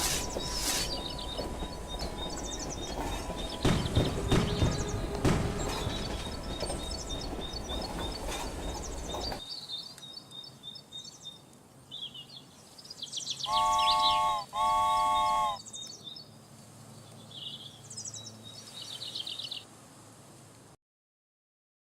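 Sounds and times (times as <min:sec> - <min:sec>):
train horn blasts: 0:00.0 - 0:09.4, 0:13.4 - 0:15.6
birds chirping: 0:00.0 - 0:16.3.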